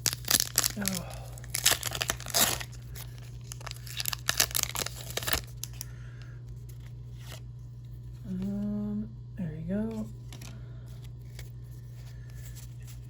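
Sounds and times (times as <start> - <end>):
foil wrapper tearing and crinkling: 0.0 - 5.9
low electrical hum: 0.0 - 13.0.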